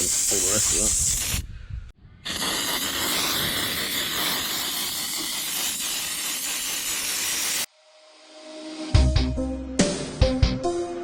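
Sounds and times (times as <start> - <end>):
aerosol can spraying: 0.0 - 1.4, 2.3 - 7.7.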